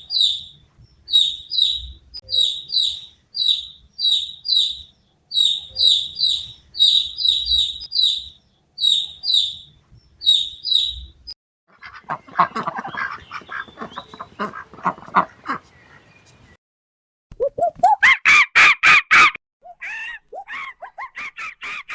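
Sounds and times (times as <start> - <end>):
bird chirping: 0.0 - 11.0, 11.8 - 16.6
ducks quacking: 11.7 - 16.6.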